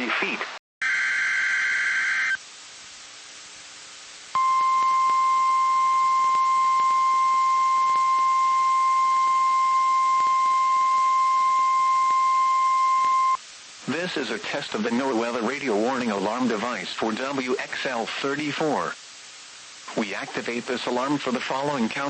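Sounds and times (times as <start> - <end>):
steady warning alarm tone: 4.4 - 13.4
radio static: 19.8 - 22.0.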